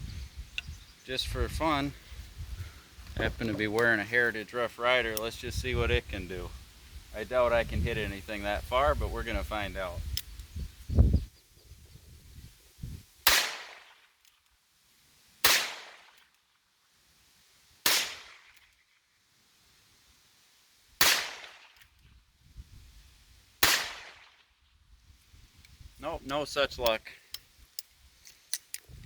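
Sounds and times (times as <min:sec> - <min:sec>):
revolver gunshots: 0:13.3 - 0:13.9, 0:15.4 - 0:16.1, 0:17.9 - 0:18.5, 0:21.0 - 0:21.7, 0:23.6 - 0:24.4.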